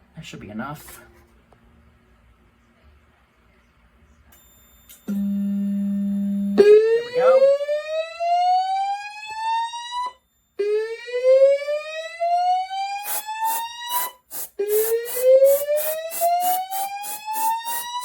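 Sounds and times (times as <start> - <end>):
rapid pulsing alarm: 5.1 - 18.0
slow whoop alarm tone: 6.6 - 13.1.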